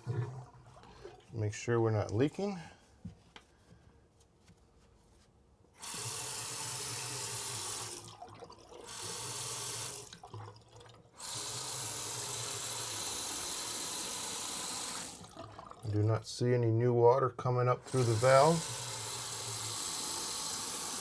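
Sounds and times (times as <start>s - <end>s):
low hum in pipes: 0.0s - 2.8s
faucet running into sink: 5.8s - 16.0s, 17.8s - 21.0s.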